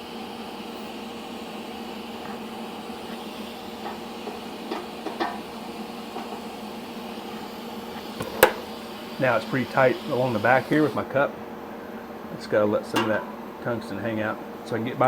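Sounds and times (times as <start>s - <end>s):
welding arc hissing: 0.0s - 11.3s.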